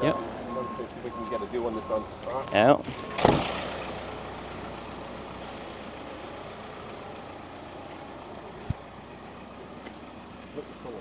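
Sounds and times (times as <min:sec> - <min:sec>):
vehicle rumble: 0:00.0 - 0:11.0
sharp knock: 0:03.2 - 0:03.6.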